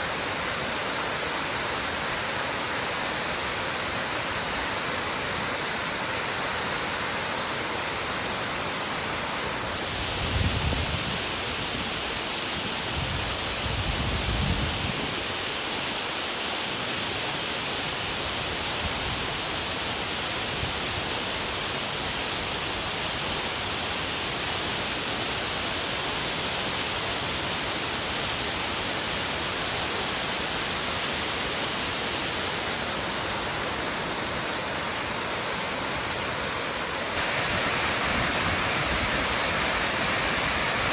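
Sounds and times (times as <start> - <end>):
waterfall rushing: 0.0 - 10.0, 30.1 - 40.9.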